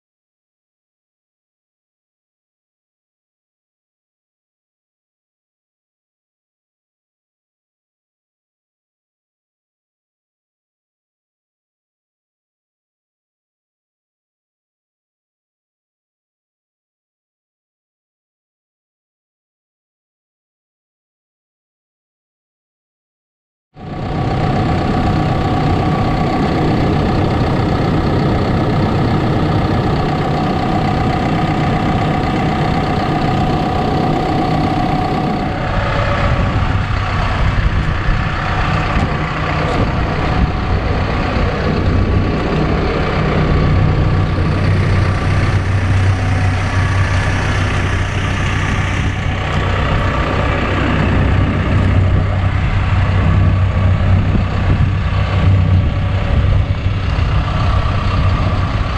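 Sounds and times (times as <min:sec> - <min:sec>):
diesel engine running: 0:23.8 - 0:58.9
steady high whine: 0:23.8 - 0:58.9.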